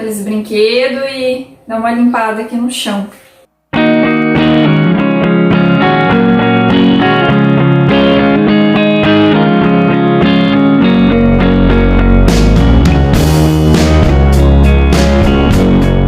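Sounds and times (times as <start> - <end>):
plucked guitar music: 3.7 - 16.0
bass line: 3.8 - 16.0.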